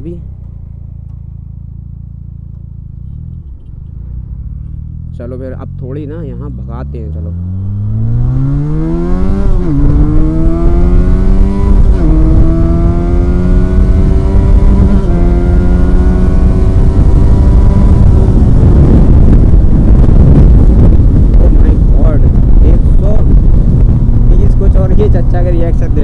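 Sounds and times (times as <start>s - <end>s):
motorcycle engine accelerating: 0.0s - 26.0s
wind rush on microphone: 7.4s - 26.0s.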